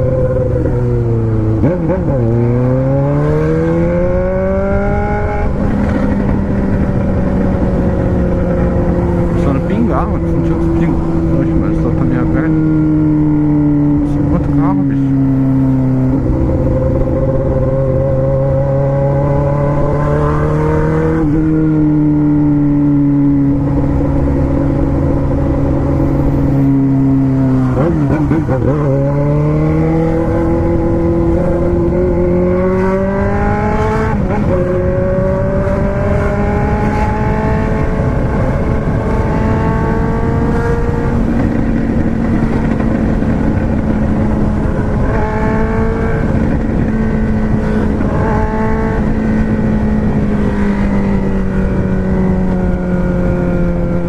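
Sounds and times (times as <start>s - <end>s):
car engine running while driving: 0.0s - 54.0s.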